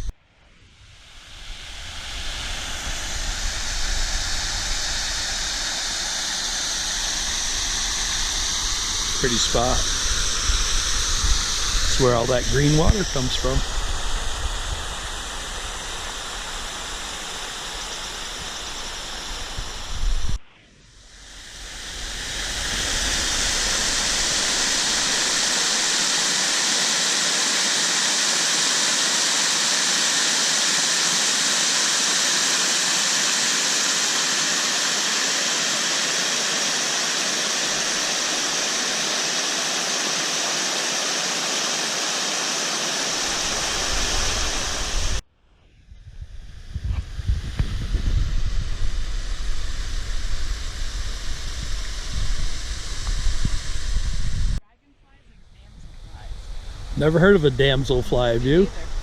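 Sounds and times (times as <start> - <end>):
waterfall rushing: 21.6 - 45.2.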